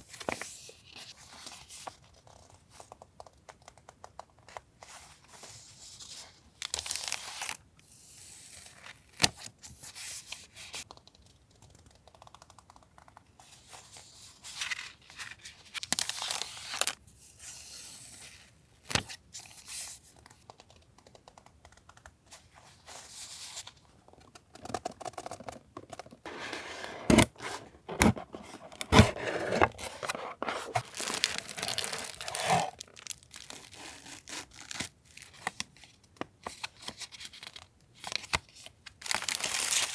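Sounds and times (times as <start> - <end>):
paper and plastic crinkling: 14.5 - 17.0, 25.1 - 39.9.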